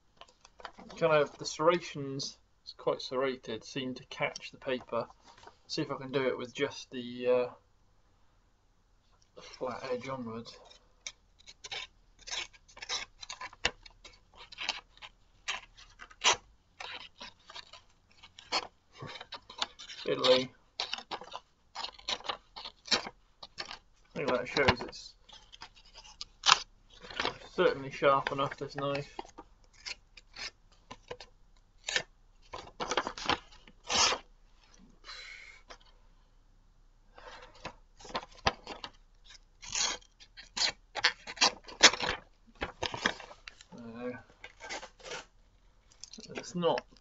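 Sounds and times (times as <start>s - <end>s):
knife cutting paper: 32.8s - 34.3s.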